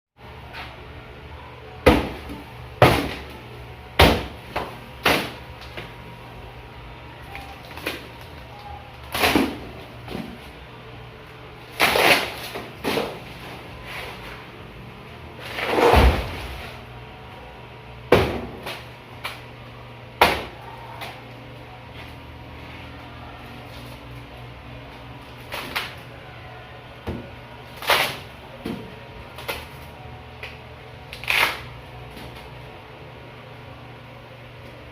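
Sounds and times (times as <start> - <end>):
heavy thud with a scrape: 15.4 - 16.8.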